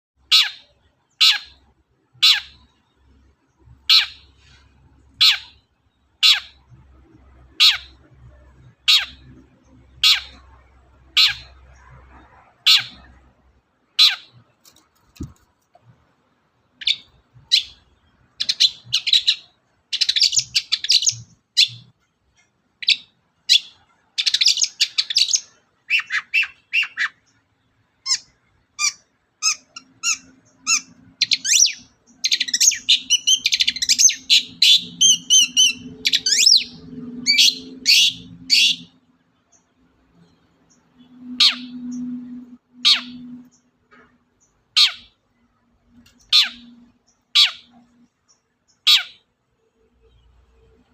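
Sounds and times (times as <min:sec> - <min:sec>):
bird harsh downward calls: 0:00.2 - 0:14.6, 0:16.7 - 0:22.0, 0:22.8 - 0:48.1, 0:48.7 - 0:49.3
bird scratchy chattering song: 0:03.6 - 0:13.3, 0:16.7 - 0:22.0, 0:22.8 - 0:27.4, 0:28.0 - 0:39.0, 0:39.6 - 0:45.2, 0:45.9 - 0:49.2.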